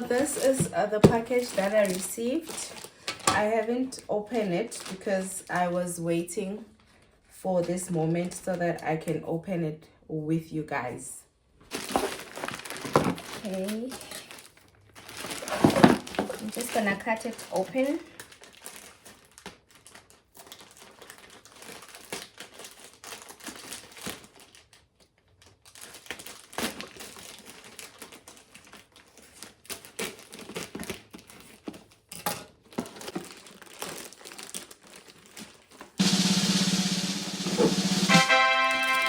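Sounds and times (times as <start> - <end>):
packaging crinkling and tearing: 0.0 - 5.7, 11.6 - 36.0
drum-led music: 36.0 - 39.0.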